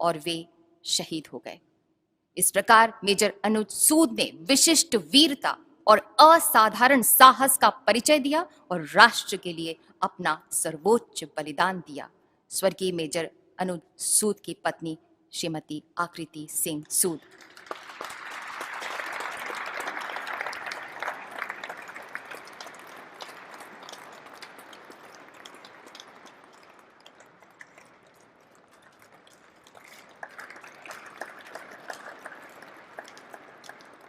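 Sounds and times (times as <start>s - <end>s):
audience applauding: 17.3s - 34.0s.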